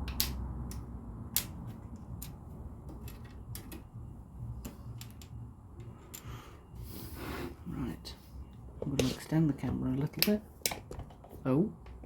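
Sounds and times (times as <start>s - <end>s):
plastic toy bricks clicking: 0.0s - 2.4s.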